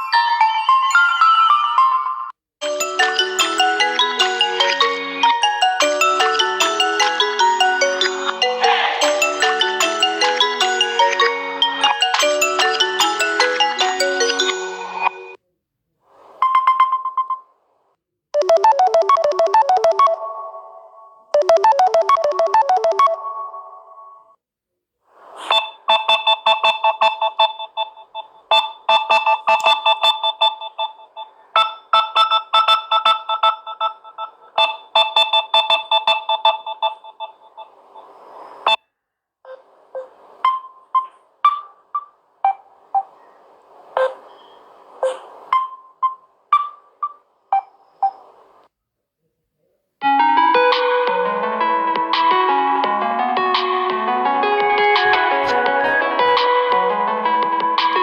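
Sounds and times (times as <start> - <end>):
phone ringtone melodies: 0.0 - 15.4, 18.4 - 24.2, 25.5 - 37.8, 50.0 - 58.0.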